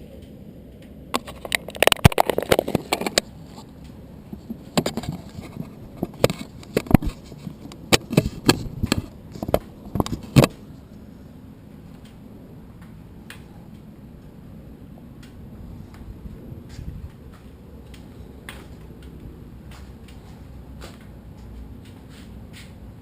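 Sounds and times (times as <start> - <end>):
camera rattling in plastic housing: 1.2 - 3.3, 4.4 - 10.5.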